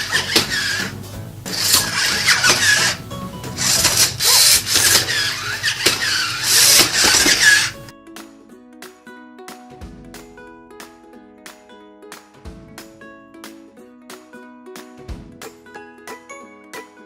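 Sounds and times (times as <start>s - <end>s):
toy servo motors whirring: 0.0s - 0.9s, 1.5s - 3.0s, 3.6s - 7.9s
background music: 0.0s - 17.0s.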